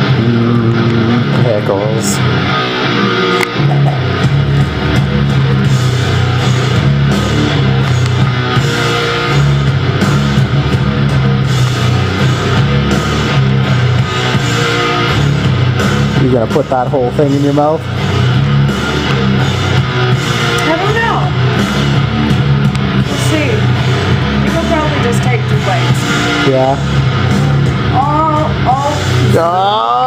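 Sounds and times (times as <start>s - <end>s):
rock music with electric guitar: 0.0s - 30.0s.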